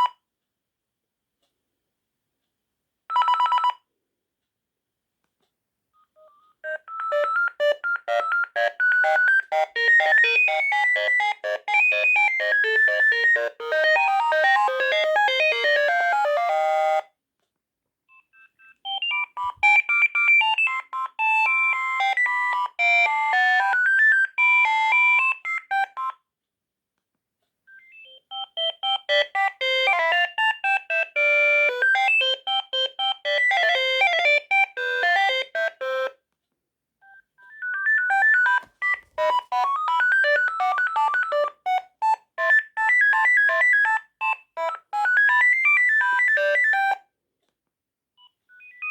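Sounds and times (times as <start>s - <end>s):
synthesized phone ringtone melodies: 6.2s - 17.1s, 18.4s - 26.2s, 27.7s - 36.2s, 37.0s - 47.0s, 48.2s - 48.9s.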